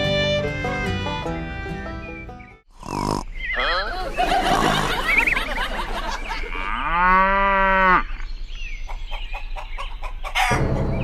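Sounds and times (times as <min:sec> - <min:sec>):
music: 0:00.0 - 0:02.6, 0:10.4 - 0:11.0
cow mooing: 0:06.5 - 0:08.2.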